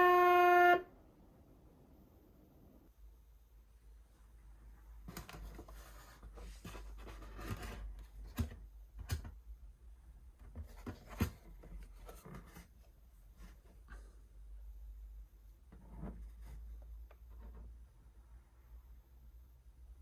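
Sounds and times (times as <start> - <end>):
handling noises rubbing and rustling: 4.0 - 9.4, 10.4 - 14.4, 15.4 - 18.0.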